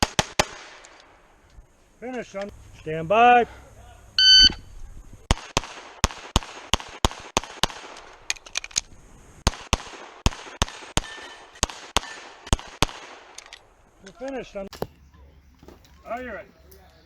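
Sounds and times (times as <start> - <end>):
rapid pistol fire: 0.0 - 0.9, 5.3 - 8.0, 9.4 - 13.4
shot timer beep: 4.2 - 4.6.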